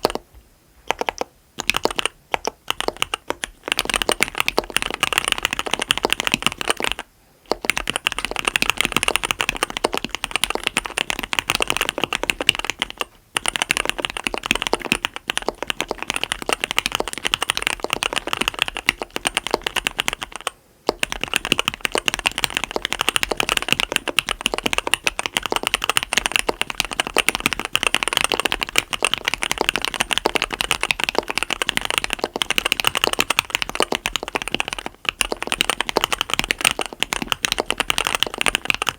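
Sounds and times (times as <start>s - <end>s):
fast mechanical keyboard typing: 0.0s - 0.3s, 0.9s - 38.9s.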